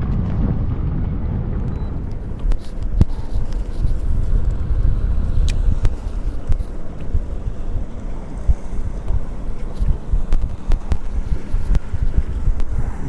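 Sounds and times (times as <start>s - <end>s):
wind rumble on microphone: 0.0s - 13.0s
sharp clicks and knocks: 1.6s - 4.6s, 8.4s - 12.8s.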